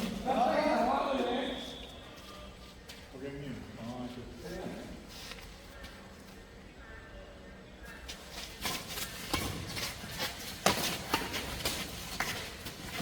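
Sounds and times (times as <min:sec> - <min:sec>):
rackets hitting shuttlecock: 0:08.6 - 0:13.0.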